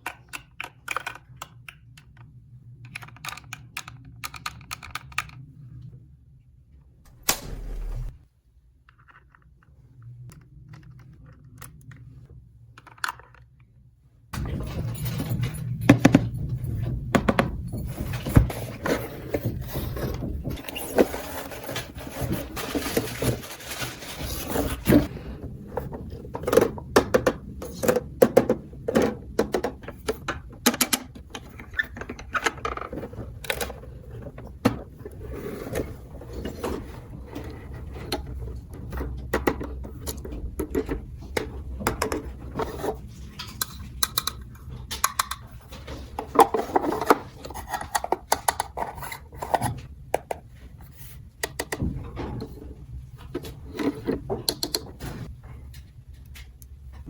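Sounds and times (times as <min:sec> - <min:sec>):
plastic parts clicking and tapping: 0:00.0 - 0:05.4, 0:25.8 - 0:34.8, 0:38.0 - 0:50.5, 0:51.4 - 0:52.2, 0:53.3 - 0:56.8
rustling: 0:18.1 - 0:25.1.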